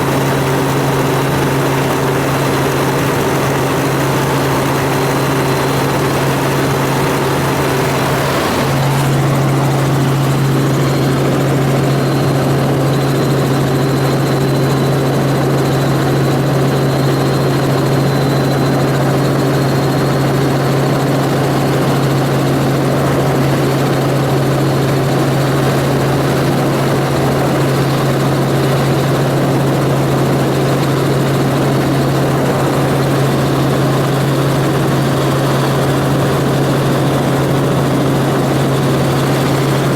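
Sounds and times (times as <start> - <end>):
helicopter rotor and turbine drone: 0.0 - 39.9.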